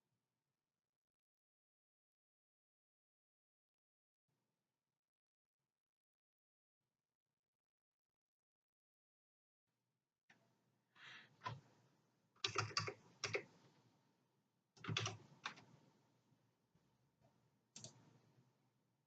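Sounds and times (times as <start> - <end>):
laptop keyboard typing: 12.4 - 13.6, 14.8 - 15.7, 17.8 - 18.1.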